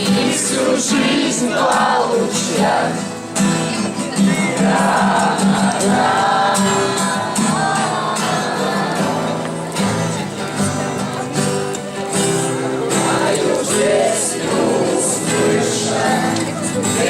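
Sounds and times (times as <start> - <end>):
strummed acoustic guitar: 0.0 - 17.0
person singing: 4.2 - 9.8.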